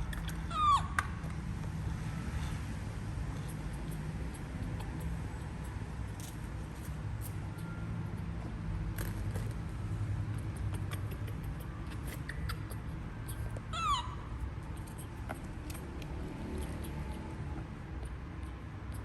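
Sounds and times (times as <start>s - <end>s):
baby monkey high call: 0.0s - 1.4s, 3.4s - 5.8s, 10.4s - 15.2s.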